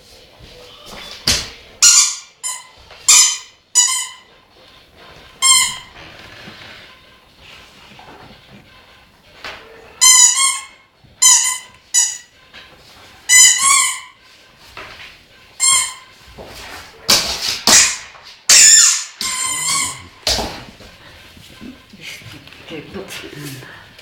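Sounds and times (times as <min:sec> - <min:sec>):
high-pitched squeaks: 0:00.6 - 0:09.0, 0:09.6 - 0:14.3, 0:15.3 - 0:17.1, 0:17.7 - 0:20.3.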